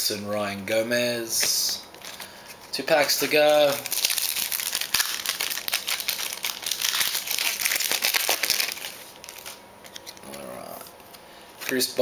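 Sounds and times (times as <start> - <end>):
wrapper tearing and crinkling: 3.4 - 10.5.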